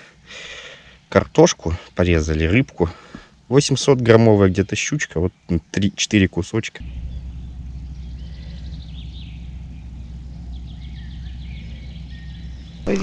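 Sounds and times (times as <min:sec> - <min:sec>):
faint bird chirps: 0:03.2 - 0:13.0
steady low rumble: 0:06.8 - 0:13.0.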